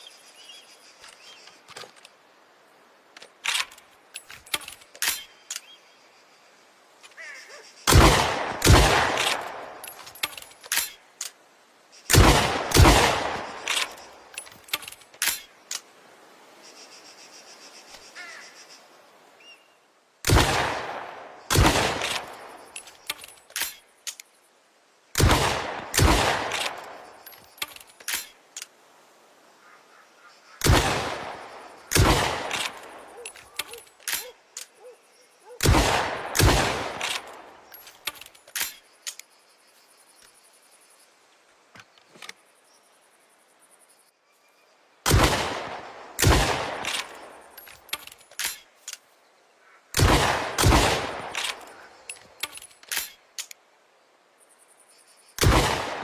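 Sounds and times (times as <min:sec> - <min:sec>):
shotgun shots with echo: 0:07.9 - 0:09.6, 0:12.1 - 0:13.5, 0:25.2 - 0:26.8, 0:30.6 - 0:32.9, 0:35.6 - 0:37.3, 0:45.1 - 0:47.0, 0:50.0 - 0:51.5, 0:55.4 - 0:56.0.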